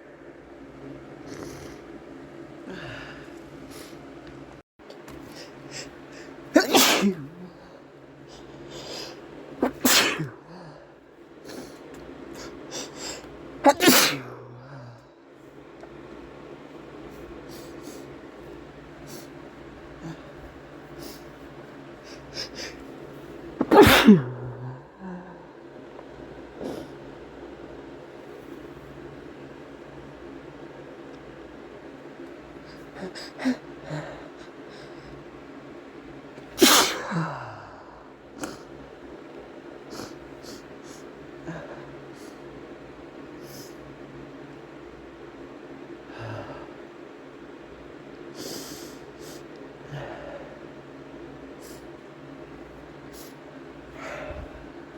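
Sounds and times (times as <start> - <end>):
man sneezing hard: 6.5 - 7.4, 9.6 - 10.6, 12.4 - 14.8, 23.6 - 24.9, 36.6 - 37.8
gasping in-breaths: 54.0 - 54.7.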